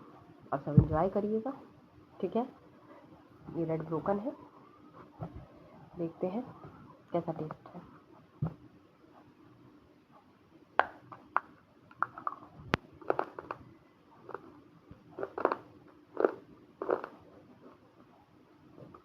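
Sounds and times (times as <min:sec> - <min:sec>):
clay being chewed with crunches: 0:10.8 - 0:13.6, 0:14.2 - 0:14.5, 0:15.2 - 0:17.2.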